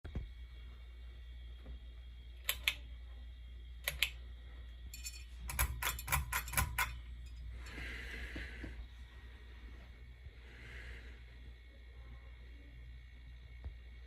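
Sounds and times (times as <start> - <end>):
pull-chain switch clicking: 3.8 - 4.2.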